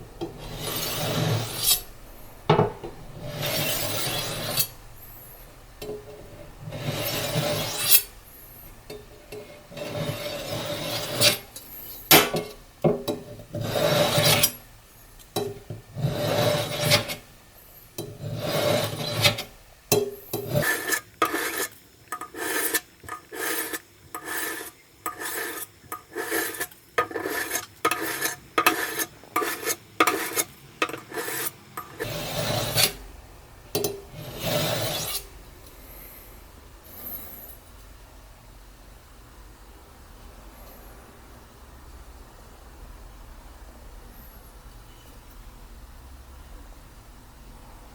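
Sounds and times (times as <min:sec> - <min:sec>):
knife scraping on sink basin: 0:00.2 - 0:08.1, 0:09.2 - 0:14.7, 0:15.4 - 0:17.3, 0:18.0 - 0:33.0, 0:33.8 - 0:35.3.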